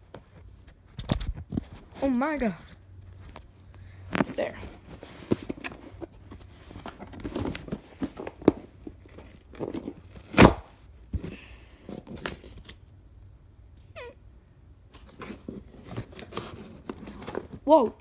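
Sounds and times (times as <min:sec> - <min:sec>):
package tearing and crinkling: 0:09.0 - 0:10.7
loud sharp rip: 0:10.2 - 0:10.7.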